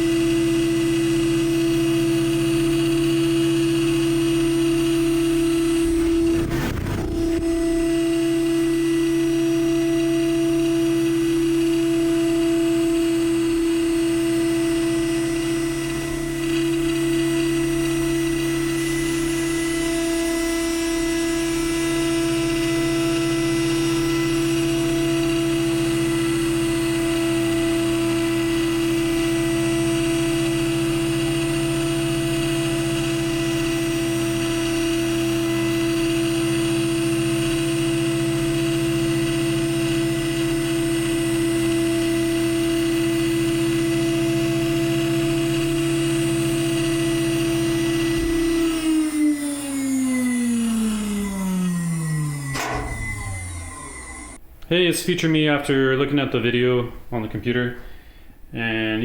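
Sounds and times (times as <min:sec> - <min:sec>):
milling spindle humming: 0:00.6 - 0:54.4
high whines: 0:05.0 - 0:10.0, 0:48.2 - 0:54.5.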